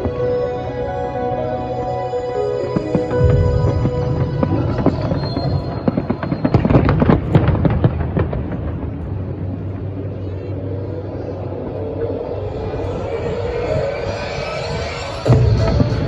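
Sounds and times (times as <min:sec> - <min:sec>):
music: 0:00.0 - 0:06.8, 0:11.8 - 0:16.0
low ambient rumble: 0:00.0 - 0:16.0
fireworks bangs and crackles: 0:02.6 - 0:16.0.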